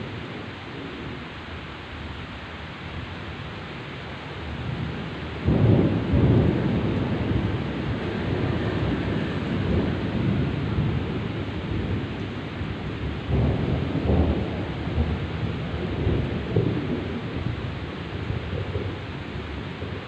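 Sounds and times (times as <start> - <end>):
heavy rain pouring: 0.0 - 20.0
rolling thunder rumble: 4.3 - 20.0.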